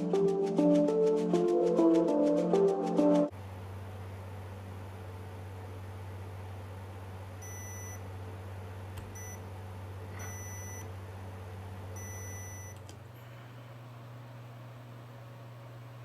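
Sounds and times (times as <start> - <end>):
low electrical hum: 3.3 - 16.0
short electronic beeps: 10.2 - 10.8, 12.0 - 12.8.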